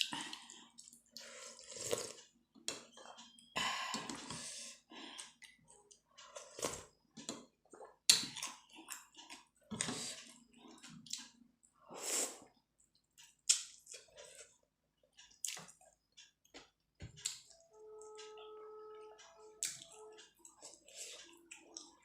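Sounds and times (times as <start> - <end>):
chewing and wet mouth sounds: 0.0 - 3.2, 5.0 - 11.8, 12.4 - 14.6, 19.5 - 22.0.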